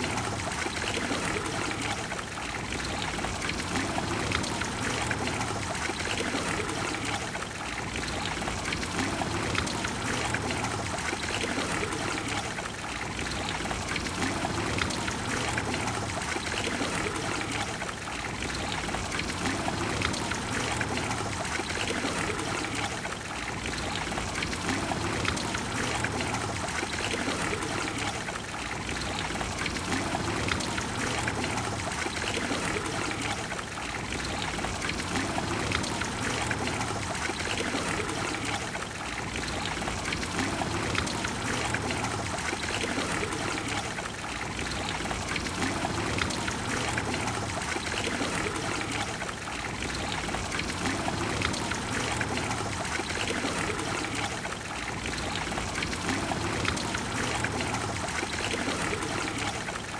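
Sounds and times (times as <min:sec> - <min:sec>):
fountain water rushing: 0:00.0 - 0:59.9.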